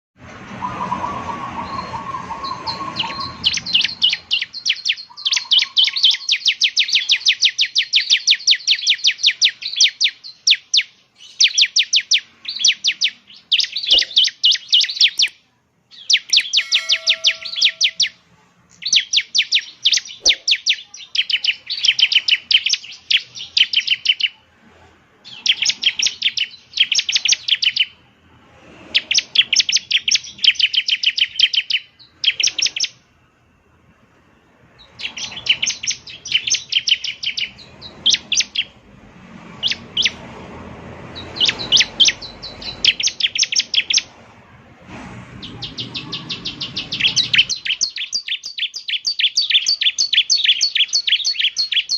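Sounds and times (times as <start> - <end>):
bird singing sharp chirps: 0.5 - 24.4, 25.3 - 28.0, 28.9 - 33.1, 34.8 - 38.8, 39.6 - 40.3, 41.1 - 44.1, 45.4 - 51.9.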